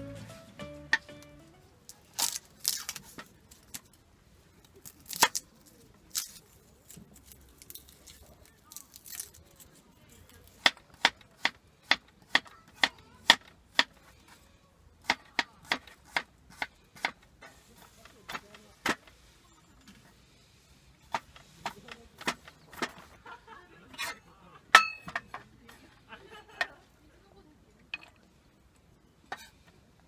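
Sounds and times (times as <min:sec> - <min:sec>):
sharp chopping strokes: 0:15.0 - 0:17.2.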